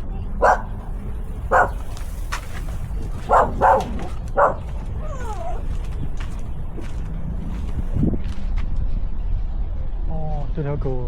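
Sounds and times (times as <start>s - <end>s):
dog whining: 0.4s - 0.7s, 1.5s - 1.8s, 3.3s - 5.7s
dog barking: 0.4s - 0.9s, 1.5s - 1.9s, 3.2s - 4.7s.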